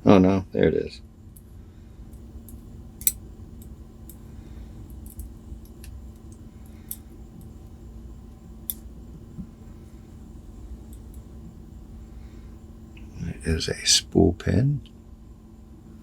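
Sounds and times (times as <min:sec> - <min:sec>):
low steady hum: 0:00.0 - 0:16.0
small metal parts clicking: 0:02.4 - 0:04.2, 0:04.9 - 0:07.5.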